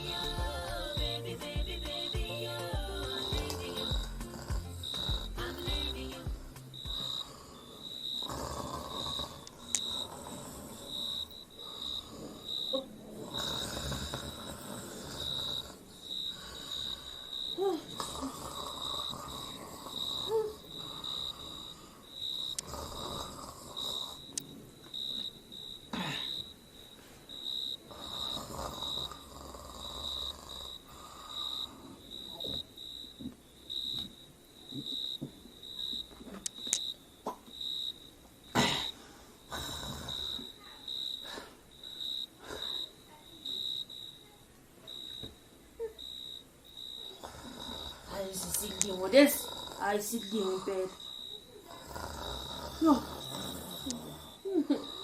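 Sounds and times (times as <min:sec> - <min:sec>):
crickets chirping: 0:00.0 - 0:55.0
man snoring: 0:02.4 - 0:24.3, 0:27.9 - 0:32.1, 0:38.6 - 0:40.5, 0:47.1 - 0:48.5, 0:49.2 - 0:50.0, 0:51.7 - 0:54.4.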